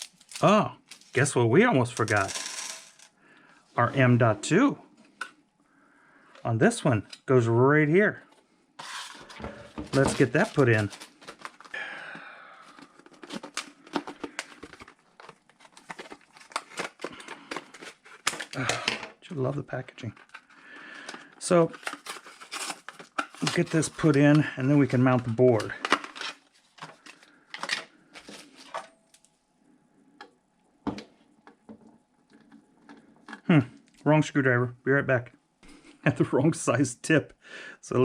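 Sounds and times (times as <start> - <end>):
plastic packaging crinkling: 0.0 - 1.2, 8.8 - 18.8, 20.0 - 28.8
computer parts clicking and rustling: 1.9 - 3.1, 8.3 - 11.8, 12.6 - 19.2, 20.0 - 24.4.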